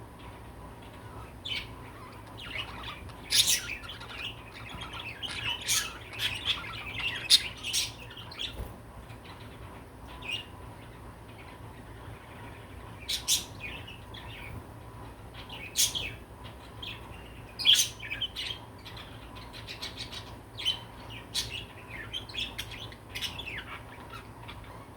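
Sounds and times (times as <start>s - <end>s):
budgerigar chirping: 1.4s - 8.5s, 15.4s - 16.2s.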